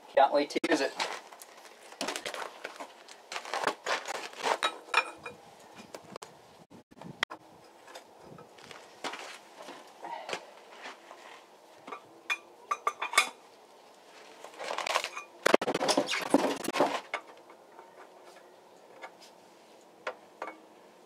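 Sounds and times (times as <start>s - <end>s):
packaging scraping and rustling: 0.9s - 4.6s, 14.2s - 17.0s.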